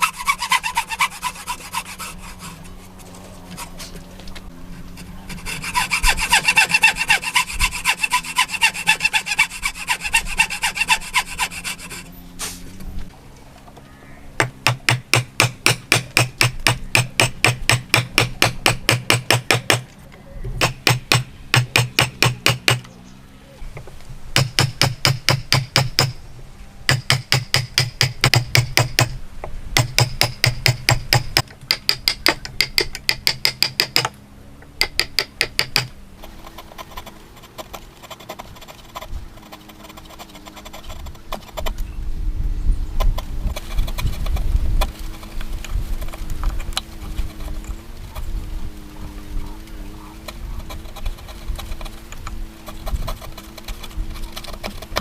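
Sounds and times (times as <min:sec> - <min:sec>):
quiet irregular workshop sounds: 0:00.0 - 0:42.0, 0:50.2 - 0:55.0
rapid hammer blows on wood: 0:14.4 - 0:19.9, 0:20.6 - 0:22.8, 0:24.3 - 0:26.2, 0:26.9 - 0:34.1, 0:34.8 - 0:41.8.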